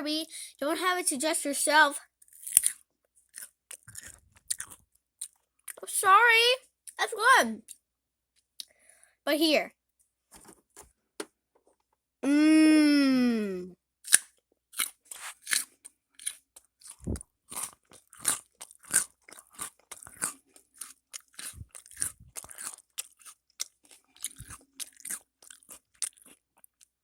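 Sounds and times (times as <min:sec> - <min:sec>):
person chewing crunchy snack: 0:02.2 - 0:05.8, 0:14.0 - 0:27.0.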